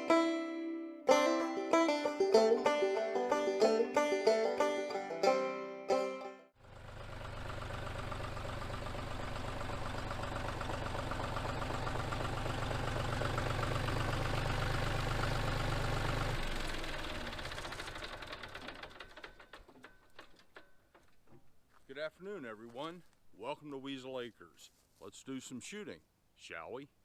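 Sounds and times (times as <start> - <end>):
vehicle engine running: 6.6 - 20.3.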